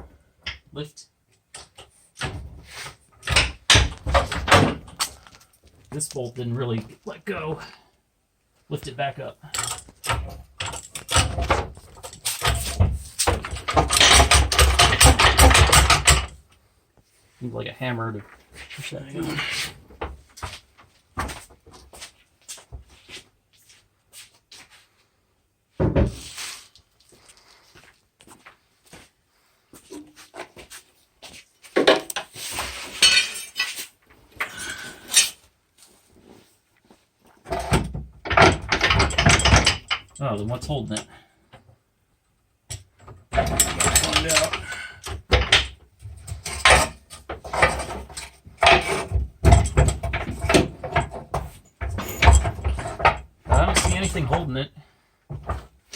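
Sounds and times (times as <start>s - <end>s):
metal tools clinking: 9.5s - 16.3s, 32.9s - 35.4s, 43.4s - 45.5s, 46.3s - 54.4s.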